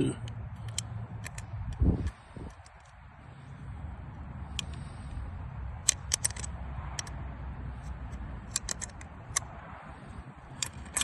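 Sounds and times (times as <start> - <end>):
steady low rumble: 0.0 - 11.0
metal wrench clicks: 0.2 - 3.0, 5.8 - 7.2, 8.1 - 9.5, 10.5 - 11.0.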